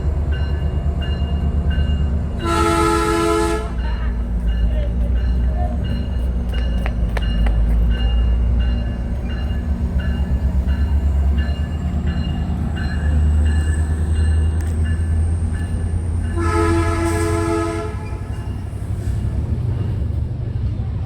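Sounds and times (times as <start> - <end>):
diesel locomotive rumbling: 0.0 - 21.0
train horn blast: 2.4 - 3.9, 16.3 - 18.3.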